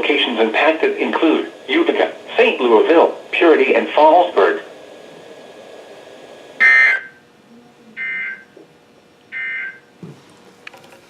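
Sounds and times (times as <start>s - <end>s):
faint radio hiss: 0.0s - 11.0s
buzzy digital chirps: 6.6s - 7.2s, 8.0s - 8.6s, 9.3s - 9.9s.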